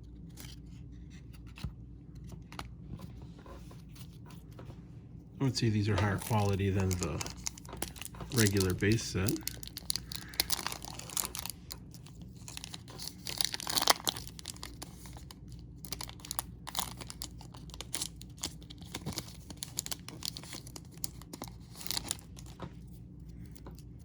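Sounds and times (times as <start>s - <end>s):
trading cards rustling and clicking: 5.4s - 24.0s.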